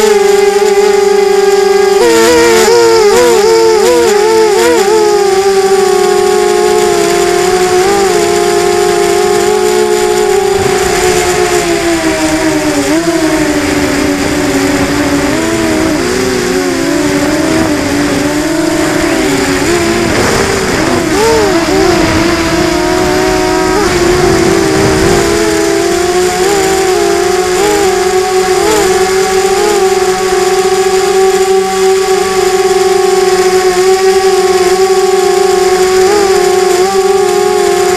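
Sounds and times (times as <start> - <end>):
drone propellers whining: 0.0 - 37.9.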